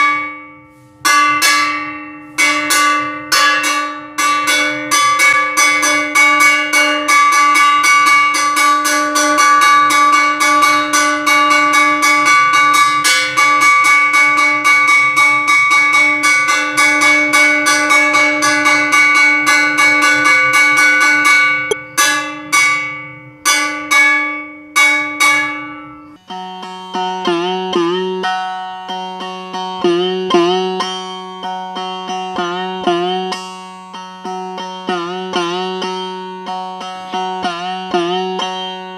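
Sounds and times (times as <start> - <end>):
plucked string instrument: 0.0 - 38.9
bell struck rapidly: 1.0 - 21.9.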